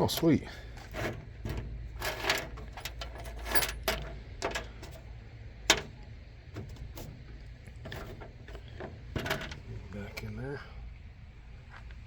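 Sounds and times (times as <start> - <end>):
metal tools clinking in drawer: 1.5 - 4.7.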